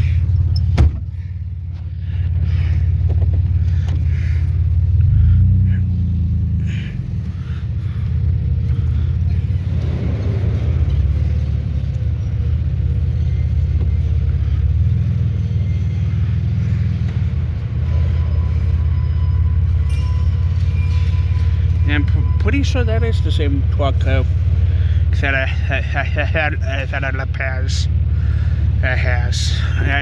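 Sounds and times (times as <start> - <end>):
truck engine running: 0.0 - 30.0.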